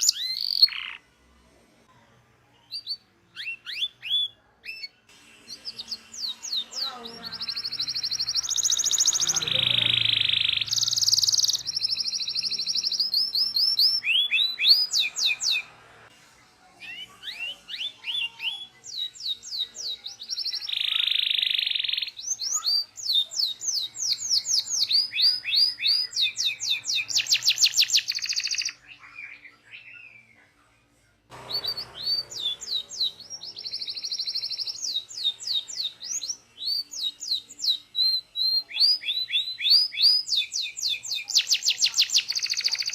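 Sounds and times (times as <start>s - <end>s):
canary singing: 0.0s - 1.1s, 2.6s - 15.9s, 16.8s - 30.4s, 31.3s - 42.9s.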